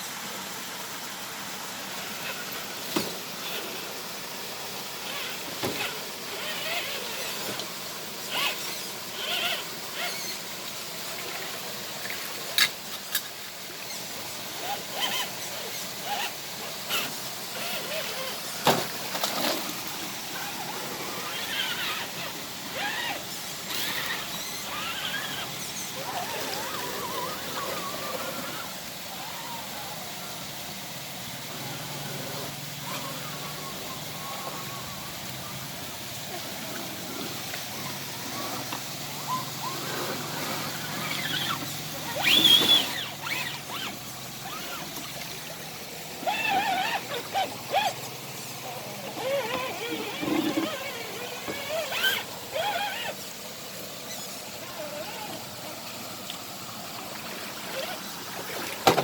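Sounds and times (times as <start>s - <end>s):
faint low engine hum: 0.0s - 58.8s
river water splashing: 0.0s - 59.0s
voices calling out: 1.9s - 59.0s.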